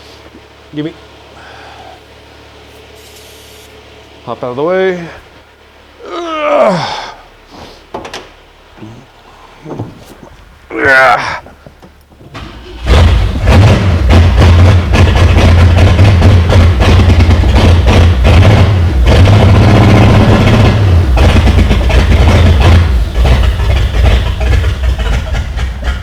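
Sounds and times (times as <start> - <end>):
loud rough car engine: 12.3 - 26.0.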